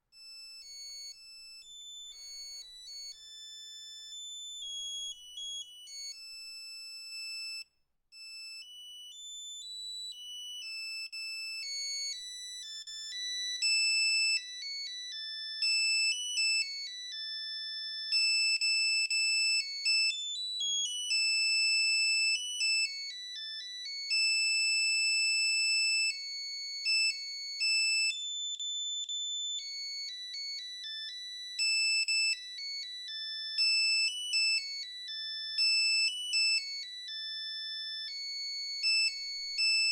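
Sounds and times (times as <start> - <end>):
monophonic phone ringtone beeps: 0.2 - 6.5.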